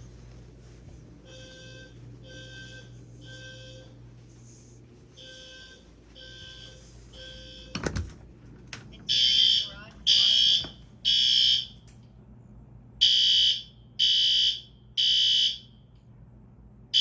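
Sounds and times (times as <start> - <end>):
fire alarm sounder beeping: 1.2 - 4.2, 5.1 - 8.1, 9.0 - 11.8, 13.0 - 15.9.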